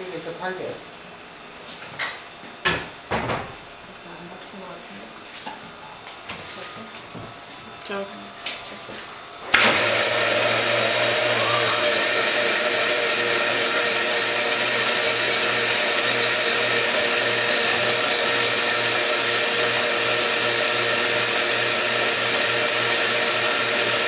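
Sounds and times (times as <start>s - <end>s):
electric blender running: 7.8s - 24.0s.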